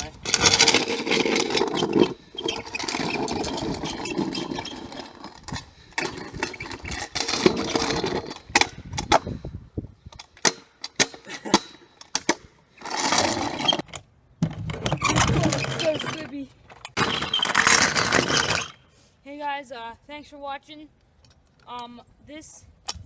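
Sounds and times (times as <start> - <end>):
scooter wheels rolling grinding: 0.0 - 9.4, 12.1 - 18.8.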